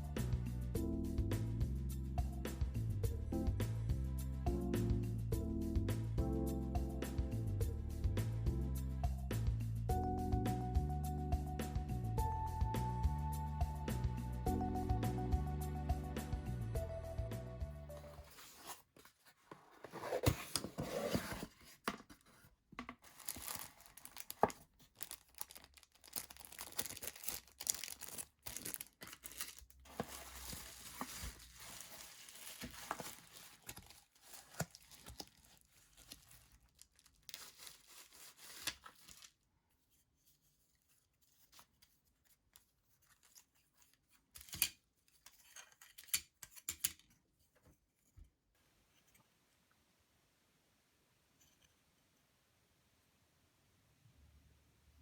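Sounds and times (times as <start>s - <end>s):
crackling and rustling handling: 17.9s - 48.4s.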